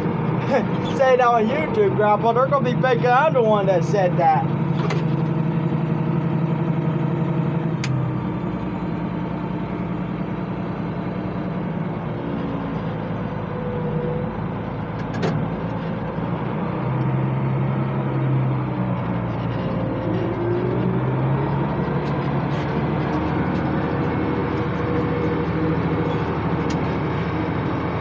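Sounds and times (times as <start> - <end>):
tractor engine droning: 0.0 - 28.0.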